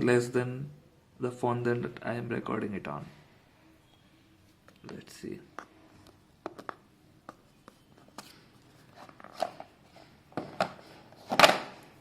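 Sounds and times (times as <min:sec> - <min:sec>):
hands handling phone and packaging: 0:04.5 - 0:12.0.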